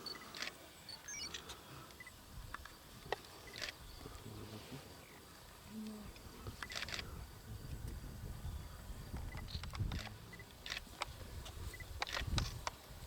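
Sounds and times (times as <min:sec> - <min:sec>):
high chirps and ticks: 0:00.1 - 0:02.8.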